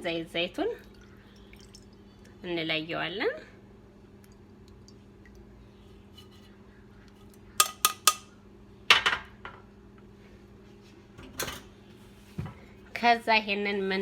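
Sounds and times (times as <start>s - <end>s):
metal kitchenware clinking: 7.6s - 8.3s.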